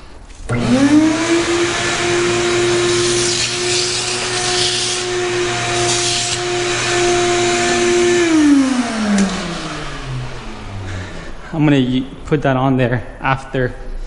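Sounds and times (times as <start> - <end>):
vacuum cleaner motor whine: 0.5 - 11.4.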